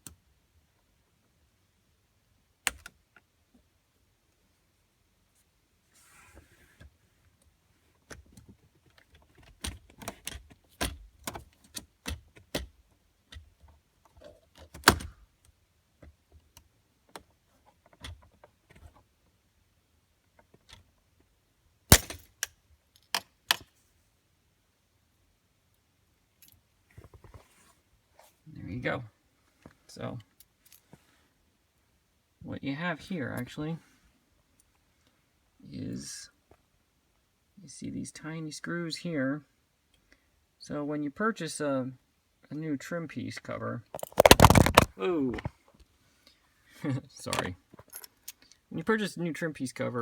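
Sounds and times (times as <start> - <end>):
plastic clicks and scrapes: 44.0 - 44.9
plastic clips snapping: 44.0 - 44.9.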